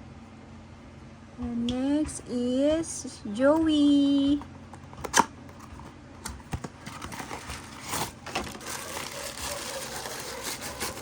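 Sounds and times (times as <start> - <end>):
plastic wrapper crinkling: 6.6 - 11.0.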